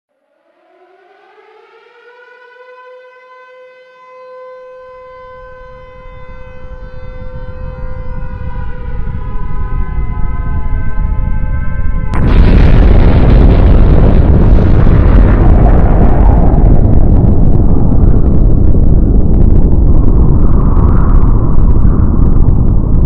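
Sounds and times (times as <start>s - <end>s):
air raid siren wailing: 0.1s - 23.0s
wavering tornado siren: 0.1s - 23.0s
low rumble: 5.3s - 23.0s.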